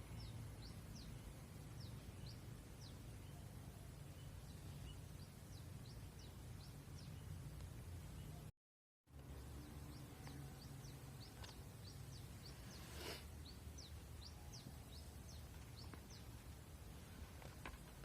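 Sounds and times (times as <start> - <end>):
sparrow chirping: 0.0 - 8.5, 9.4 - 16.6
brief hiss: 12.6 - 13.4.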